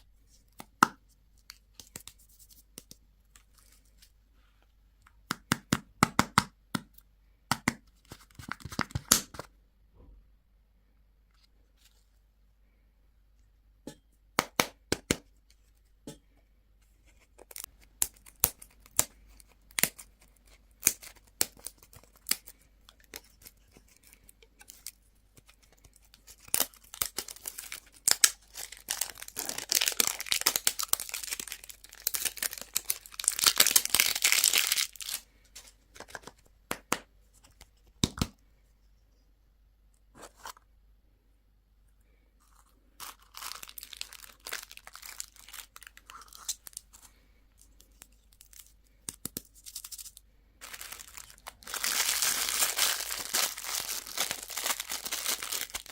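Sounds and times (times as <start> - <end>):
wrapper tearing and crinkling: 25.9 - 35.2, 43.0 - 46.8, 49.5 - 55.9.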